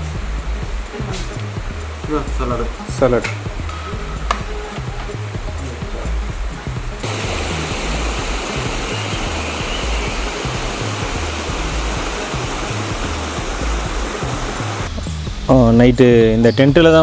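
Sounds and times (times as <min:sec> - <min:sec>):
small waterfall rushing: 0:00.0 - 0:14.9
background music with low beat: 0:00.0 - 0:17.0.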